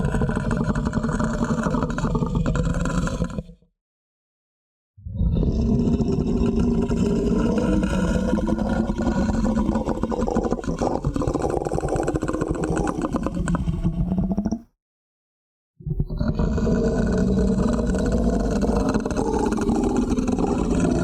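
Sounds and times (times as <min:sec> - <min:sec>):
person growling like a monster: 0:05.1 - 0:13.5, 0:16.1 - 0:21.0.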